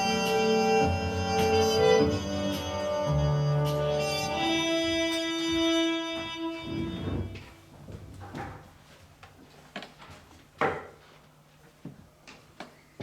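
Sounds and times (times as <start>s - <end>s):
held music chord: 0.0s - 7.4s.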